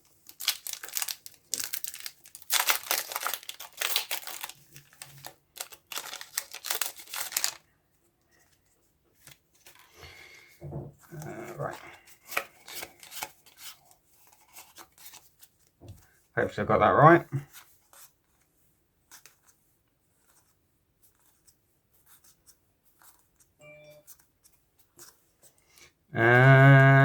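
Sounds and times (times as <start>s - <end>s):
plastic packaging crinkling and tearing: 0.0s - 7.7s, 11.1s - 15.5s.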